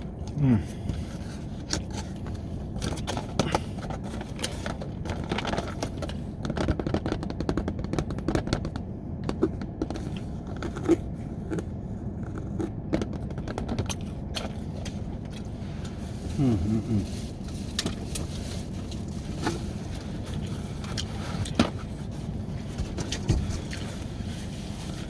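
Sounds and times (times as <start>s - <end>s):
low steady hum: 0.0s - 25.0s
person chewing food: 9.3s - 16.8s, 17.7s - 21.6s.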